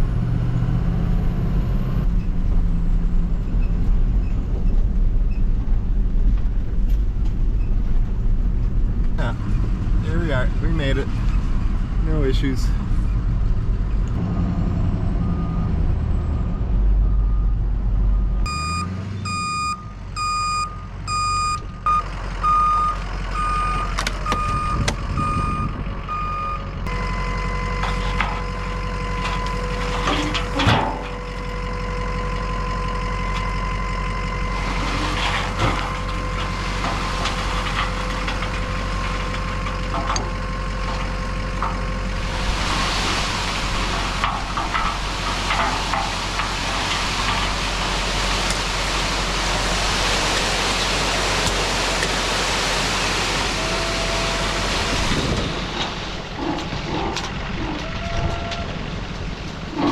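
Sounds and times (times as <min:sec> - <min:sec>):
truck engine: 0:00.0 - 0:59.9
truck reversing alarm beeping: 0:15.1 - 0:35.1
hydraulic pump whine: 0:50.8 - 0:58.8.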